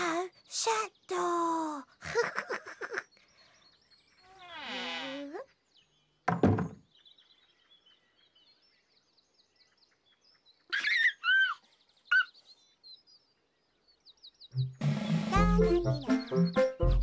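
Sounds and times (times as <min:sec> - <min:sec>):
birds chirping: 0:00.0 - 0:17.0
door slamming shut: 0:06.3 - 0:06.8.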